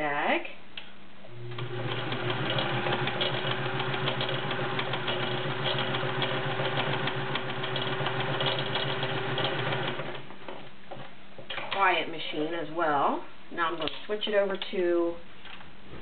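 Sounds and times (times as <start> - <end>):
sewing machine running: 1.4 - 10.2.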